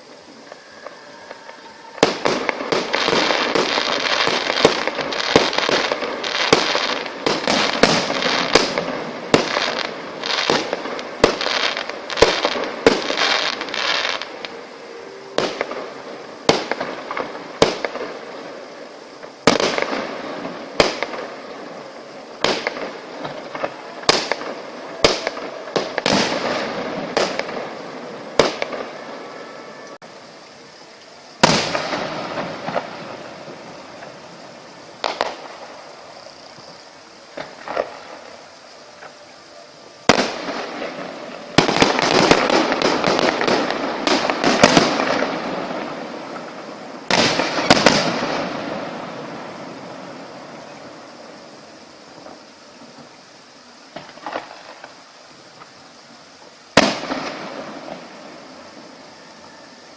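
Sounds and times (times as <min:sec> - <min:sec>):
fireworks bangs: 0:00.0 - 0:29.9, 0:31.4 - 0:39.2, 0:40.0 - 0:53.2, 0:53.9 - 0:55.8, 0:56.7 - 0:59.0
fireworks crackling: 0:00.0 - 0:59.9.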